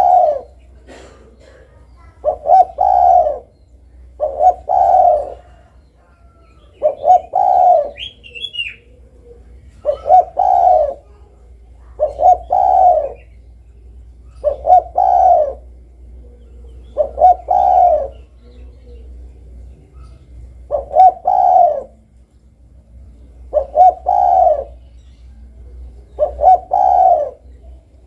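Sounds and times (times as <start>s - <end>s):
dove cooing: 0.0s - 22.2s, 22.8s - 28.0s
high bird chirp: 1.9s - 9.0s, 23.0s - 27.9s.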